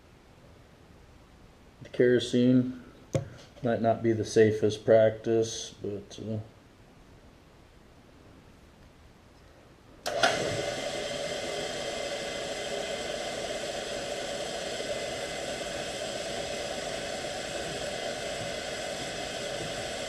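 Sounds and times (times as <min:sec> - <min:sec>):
drill press running: 0:10.0 - 0:20.0.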